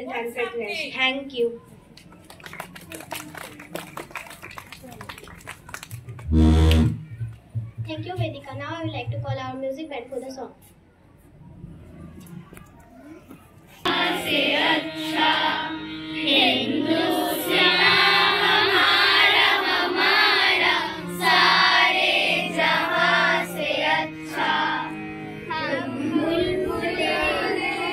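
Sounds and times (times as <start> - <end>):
sustained instrumental notes: 6.2 - 7.8, 13.9 - 27.7
children singing: 13.9 - 27.9.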